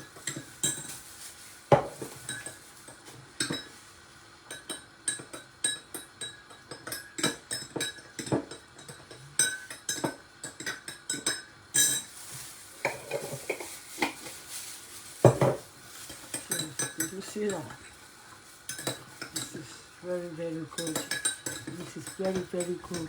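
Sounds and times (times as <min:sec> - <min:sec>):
spoon clinking in a cup: 0:00.1 - 0:01.0, 0:01.8 - 0:03.7, 0:04.5 - 0:12.2, 0:15.3 - 0:17.9, 0:18.7 - 0:19.8, 0:20.7 - 0:23.0.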